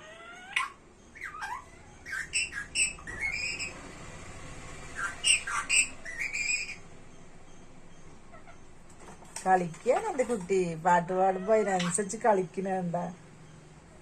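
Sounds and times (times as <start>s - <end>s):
parrot chirping and squawking: 0.0s - 3.8s, 4.9s - 6.9s, 8.2s - 8.7s, 11.2s - 12.2s.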